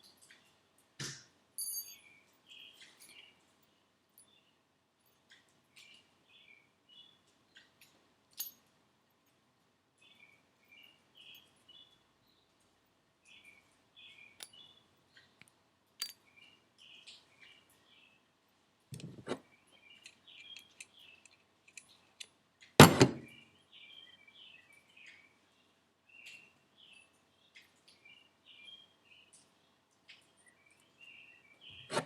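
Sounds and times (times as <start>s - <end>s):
metal parts clicking and knocking: 15.4s - 16.3s, 18.9s - 23.3s
birds chirping: 19.2s - 22.2s.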